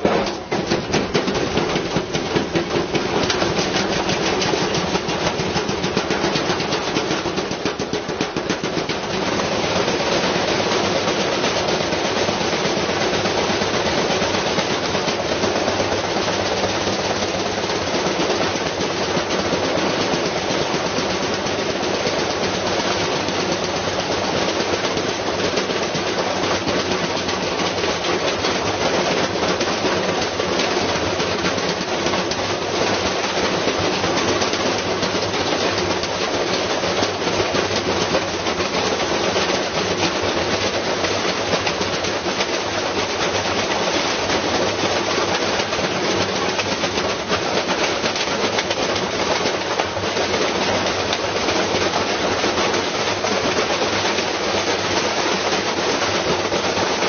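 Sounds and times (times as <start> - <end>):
brick rattling in washing machine drum: 0.0 - 57.0
washing machine hum: 0.0 - 57.0.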